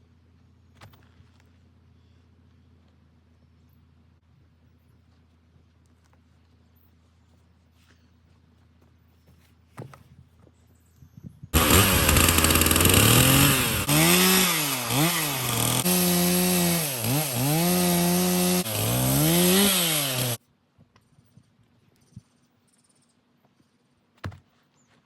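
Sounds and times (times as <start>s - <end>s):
chainsaw cutting wood: 11.6s - 20.4s.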